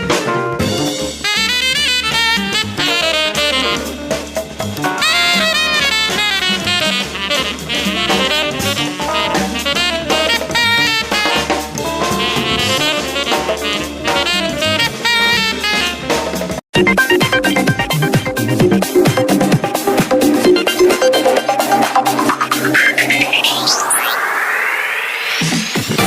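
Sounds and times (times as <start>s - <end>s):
jazzy phone ringtone: 7.9s - 11.2s, 11.8s - 15.2s.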